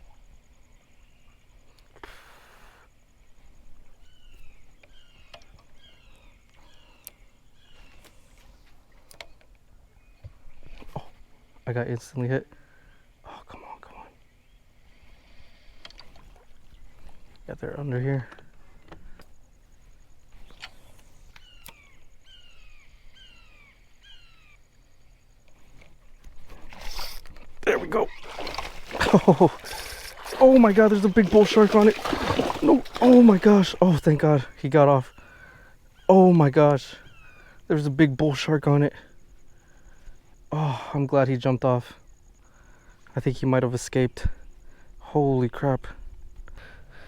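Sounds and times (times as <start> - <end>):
bird calling falling notes: 26.7 - 35.4.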